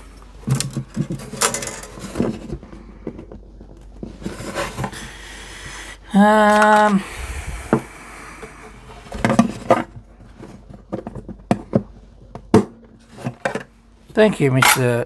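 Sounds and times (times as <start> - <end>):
small tools clicking and tapping: 14.6 - 14.9.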